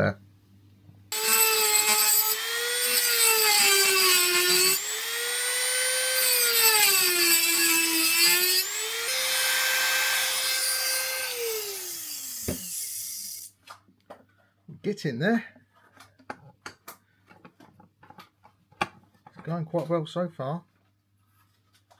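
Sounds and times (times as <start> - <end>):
electric power tool cutting metal: 1.1 - 13.5.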